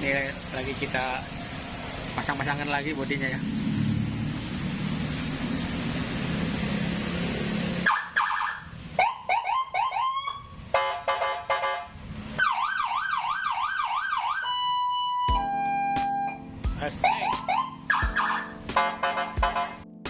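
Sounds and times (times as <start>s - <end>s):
motorcycle siren cycling tones: 7.8s - 10.5s, 12.4s - 19.8s.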